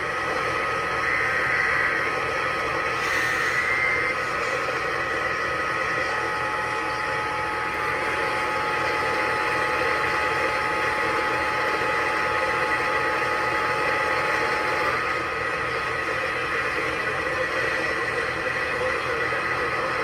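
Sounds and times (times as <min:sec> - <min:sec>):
faint steady whistle tones: 0:00.3 - 0:07.2
radio static hiss: 0:00.7 - 0:07.4.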